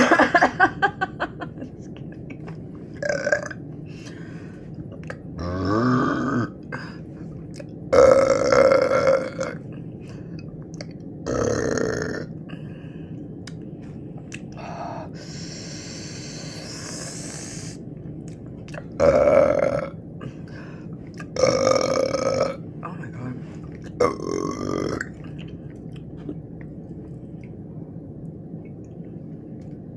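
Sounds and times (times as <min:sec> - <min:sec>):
person burping loudly: 0:03.0 - 0:03.6, 0:05.4 - 0:06.6, 0:08.0 - 0:09.6, 0:11.2 - 0:12.3, 0:19.0 - 0:20.0, 0:21.4 - 0:22.6, 0:24.0 - 0:25.2
long hiss: 0:14.6 - 0:17.8.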